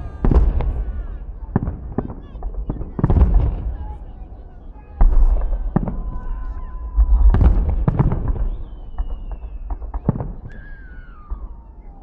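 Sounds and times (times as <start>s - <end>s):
fireworks bursting with sharp bangs: 0.0s - 12.0s
long falling whistles: 8.2s - 12.0s.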